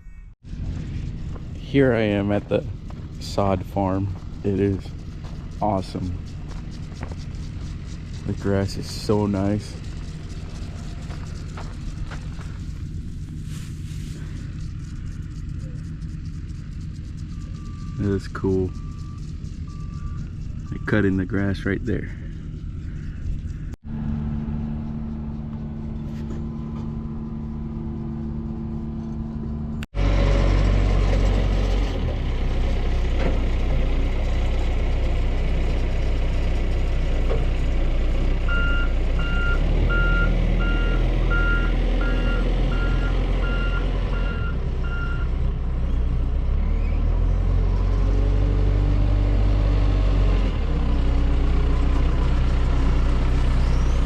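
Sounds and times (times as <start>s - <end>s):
heavy machinery engines running: 0.4s - 54.0s
reversing alarm beeping: 17.3s - 21.2s, 38.5s - 45.3s.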